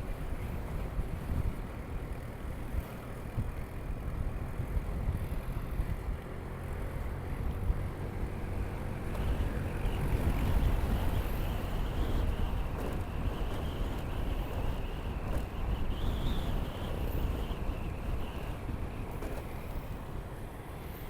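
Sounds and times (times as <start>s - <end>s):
wind buffeting microphone: 7.3s - 21.0s.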